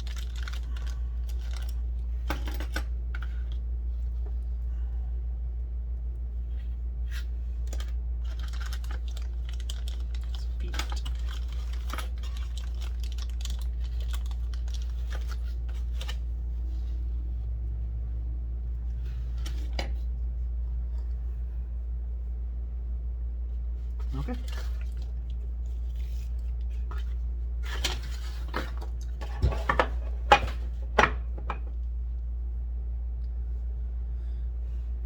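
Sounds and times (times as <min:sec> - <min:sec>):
packaging rustling and clicking: 0:00.0 - 0:02.8, 0:07.6 - 0:16.2
steady low hum: 0:00.0 - 0:35.0.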